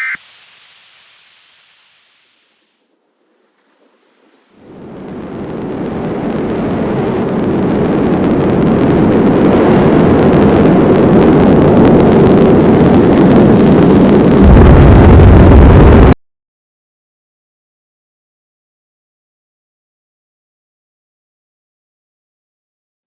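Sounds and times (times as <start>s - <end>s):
loud storm wind rushing: 4.5s - 16.2s.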